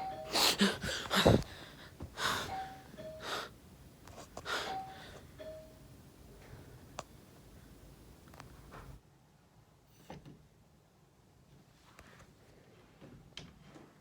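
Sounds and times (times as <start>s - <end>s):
doorbell ding-dong chime: 0.0s - 0.4s, 2.5s - 3.3s, 4.7s - 5.8s
sharp breaths or gasps: 0.0s - 3.6s, 4.2s - 5.4s.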